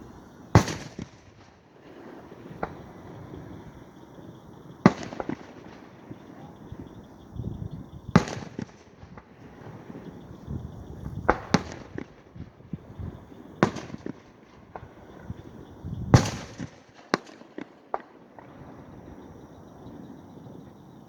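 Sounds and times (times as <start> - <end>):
fireworks booming and cracking: 0.0 - 21.0.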